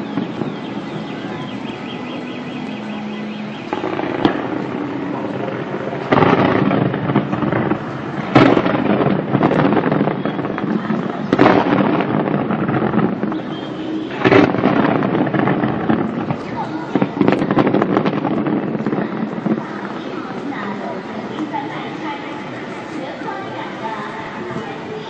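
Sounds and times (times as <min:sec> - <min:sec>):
fireworks crackle: 0:00.0 - 0:25.0
loud fireworks bangs: 0:00.0 - 0:25.0.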